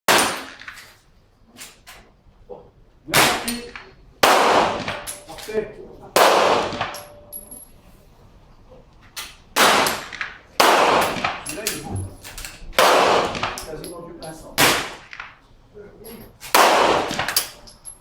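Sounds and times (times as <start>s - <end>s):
pistol shots echoing: 3.2s - 7.6s, 9.6s - 11.8s, 12.8s - 13.8s, 14.6s - 15.3s, 16.5s - 17.6s.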